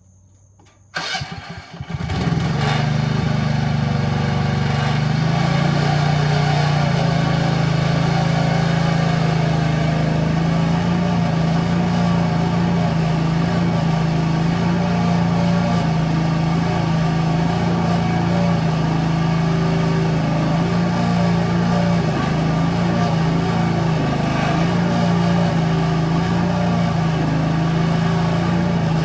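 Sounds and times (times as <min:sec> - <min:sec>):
excavator engine running: 0:01.0 - 0:29.0.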